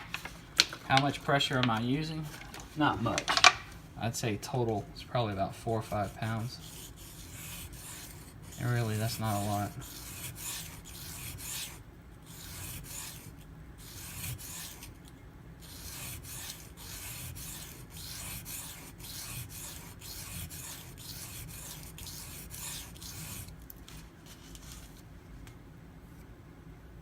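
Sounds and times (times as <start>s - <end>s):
knife scraping on whetstone: 5.7s - 15.0s, 15.6s - 23.6s.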